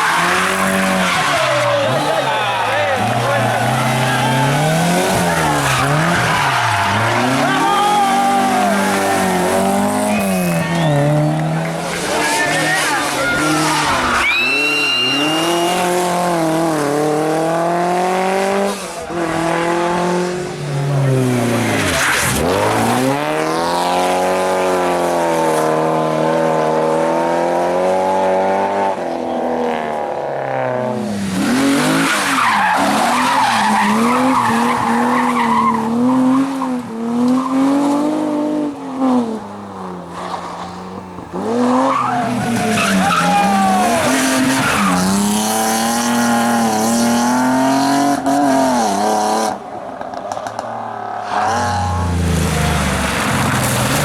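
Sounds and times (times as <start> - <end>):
tyres squealing: 0.0 - 11.2, 40.1 - 45.5
rally car engine revving: 0.0 - 54.0.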